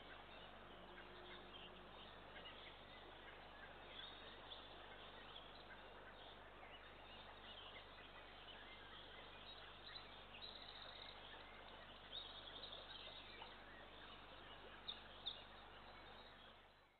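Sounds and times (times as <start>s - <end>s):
songbird chirps: 0.0s - 16.9s
steady background hiss: 0.0s - 16.9s.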